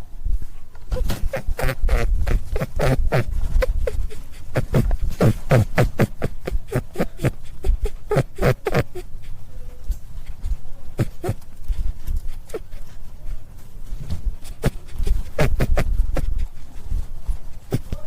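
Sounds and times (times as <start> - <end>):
rabbit crying: 0.9 - 9.3, 11.0 - 11.4, 12.2 - 12.9, 14.4 - 16.5.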